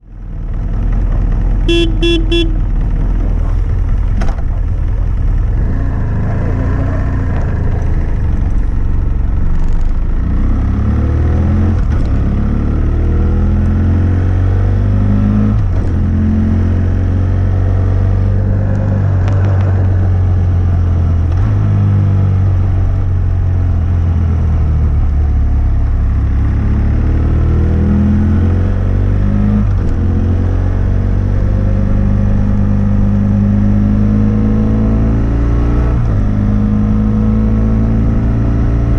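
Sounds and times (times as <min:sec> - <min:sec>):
motorcycle engine revving: 0:00.4 - 0:25.2.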